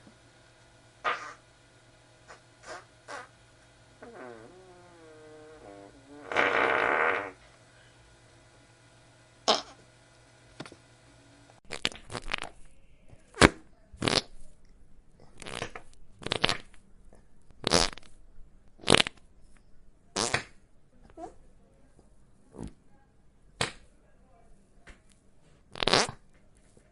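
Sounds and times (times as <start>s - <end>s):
farts: 1.0s - 1.4s, 2.3s - 3.3s, 4.0s - 7.4s, 9.4s - 9.8s, 11.7s - 12.5s, 13.4s - 14.4s, 15.4s - 16.7s, 17.6s - 18.1s, 18.8s - 19.2s, 20.2s - 20.5s, 25.7s - 26.2s.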